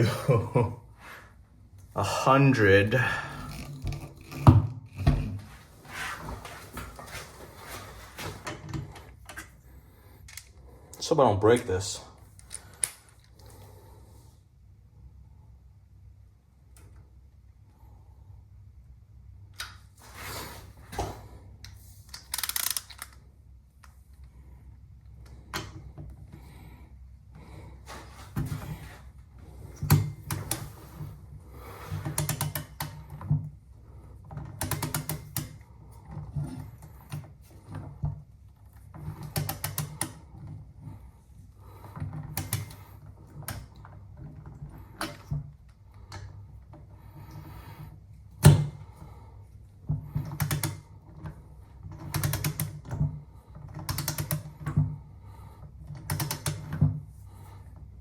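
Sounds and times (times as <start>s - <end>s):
ratchet wrench clicking: 22.1s - 23.1s.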